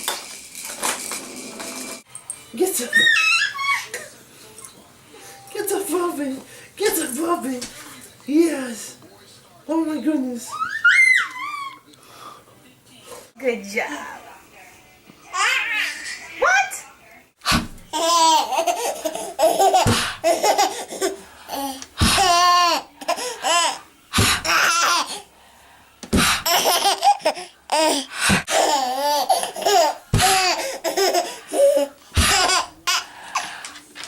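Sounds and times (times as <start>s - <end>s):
baby laughing: 17.9s - 23.8s, 24.4s - 25.2s, 26.4s - 33.1s.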